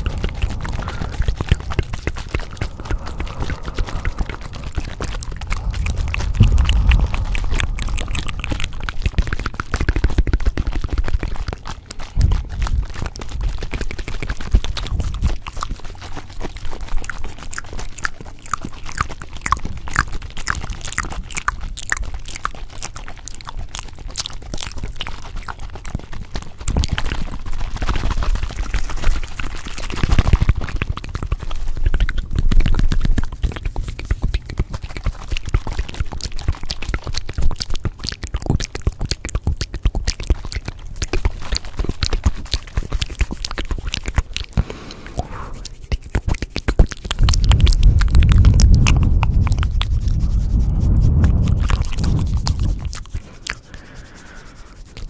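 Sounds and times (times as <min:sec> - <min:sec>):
low rumble: 0:00.0 - 0:11.2, 0:46.9 - 0:53.8
crackling and clicking: 0:00.0 - 0:55.0.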